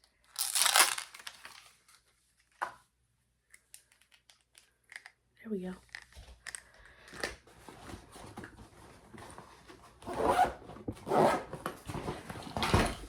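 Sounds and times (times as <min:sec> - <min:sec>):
zipper pulled: 0:10.0 - 0:11.5.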